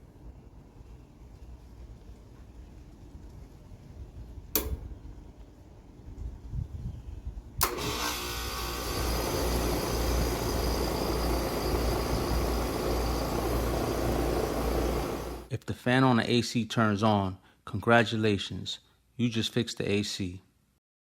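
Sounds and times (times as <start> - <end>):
air conditioner unit running: 0.0 - 15.5
sharp relay click: 4.5 - 5.0, 7.6 - 8.1.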